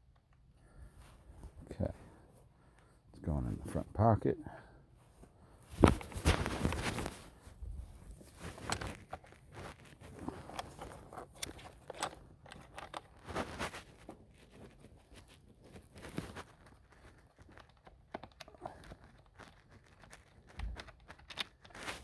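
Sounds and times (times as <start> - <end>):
clothing rustling: 5.0 - 17.6.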